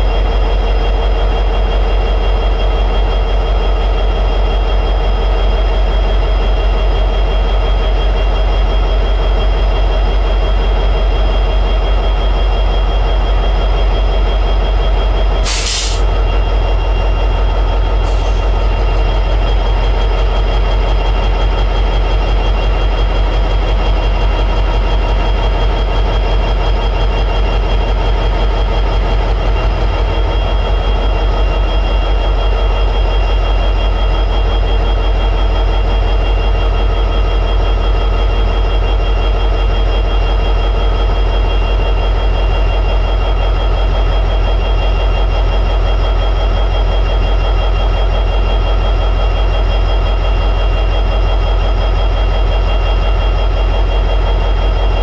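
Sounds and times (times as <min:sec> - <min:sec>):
diesel locomotive engine idling: 0:00.0 - 0:55.0
short burst of hiss: 0:15.4 - 0:16.0.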